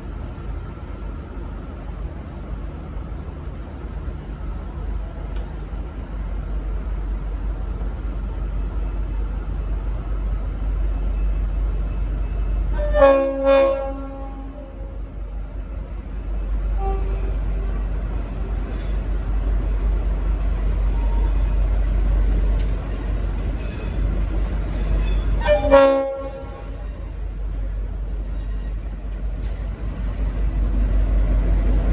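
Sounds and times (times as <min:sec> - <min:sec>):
diesel locomotive engine rumble: 0:00.0 - 0:31.9
locomotive horn blasts: 0:12.7 - 0:14.9, 0:16.8 - 0:17.4, 0:25.4 - 0:26.9.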